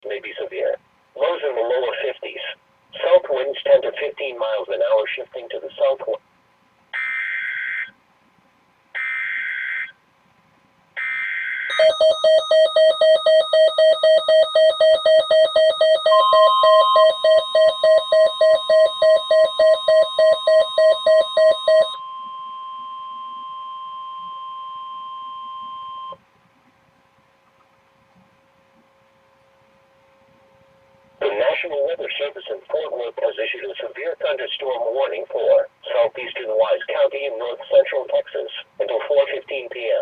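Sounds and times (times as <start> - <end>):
steady alarm tone: 11.0 - 26.2
data tone bursts: 11.7 - 26.2.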